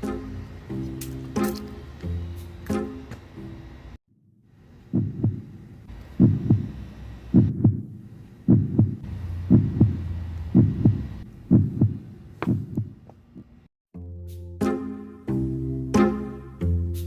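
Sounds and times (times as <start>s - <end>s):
heartbeat thumps: 4.9s - 13.7s.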